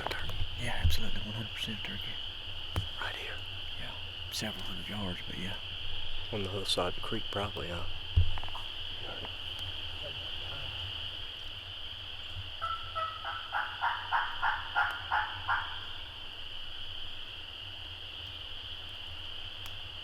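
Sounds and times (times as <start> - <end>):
high insect drone: 0.0 - 20.0
wild turkey yelping: 12.6 - 16.3.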